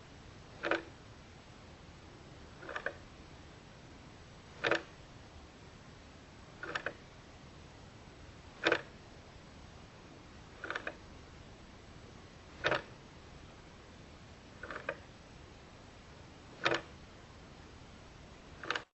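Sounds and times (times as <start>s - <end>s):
faint steady hiss: 0.0s - 18.9s
clock ticking slowly: 0.5s - 1.0s, 2.6s - 3.0s, 4.6s - 5.0s, 6.6s - 7.1s, 8.6s - 9.0s, 10.5s - 11.1s, 12.5s - 13.0s, 14.6s - 15.1s, 16.6s - 16.9s, 18.6s - 18.9s.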